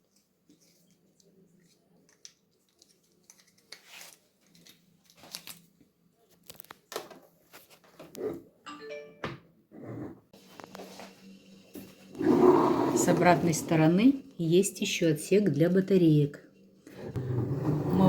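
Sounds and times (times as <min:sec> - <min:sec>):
plastic packaging rustling: 0:00.1 - 0:05.8.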